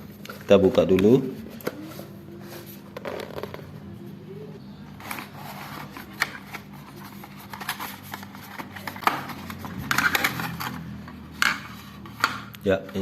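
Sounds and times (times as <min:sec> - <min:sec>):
packaging clicks and rustles: 0:05.0 - 0:12.4.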